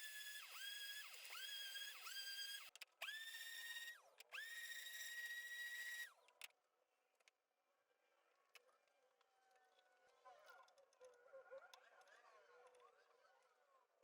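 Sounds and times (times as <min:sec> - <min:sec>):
cordless drill whirring: 0:00.0 - 0:06.1.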